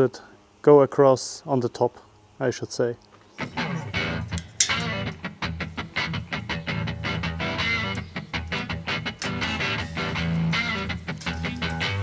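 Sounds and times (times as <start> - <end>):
guitar notes: 3.4 - 12.0
low bass line: 6.4 - 12.0.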